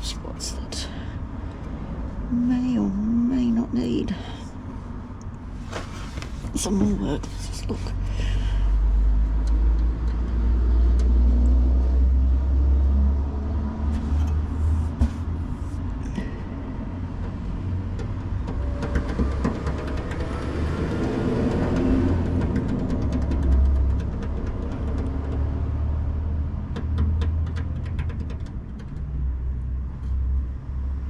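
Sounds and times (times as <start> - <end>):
light knocks and clicks: 26.7 - 29.2.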